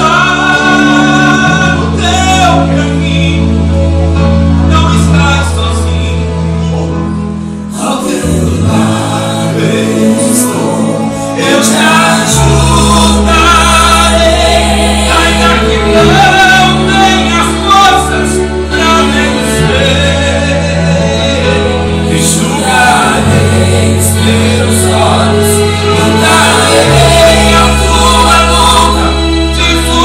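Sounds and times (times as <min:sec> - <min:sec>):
gospel song with choir: 0:00.0 - 0:30.0.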